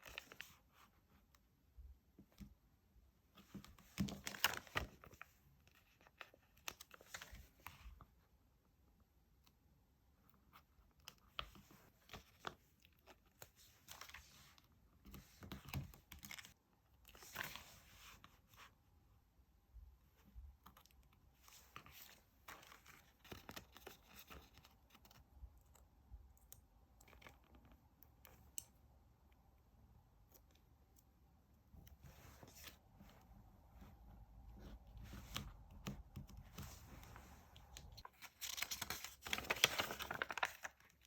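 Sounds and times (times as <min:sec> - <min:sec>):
paper rustling: 0:03.5 - 0:07.8, 0:34.6 - 0:41.0.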